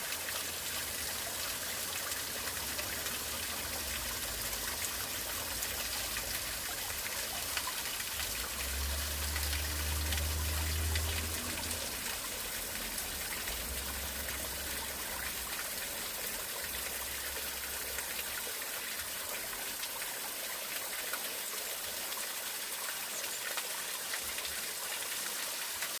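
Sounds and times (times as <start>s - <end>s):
stream running over rocks: 0.0s - 26.0s.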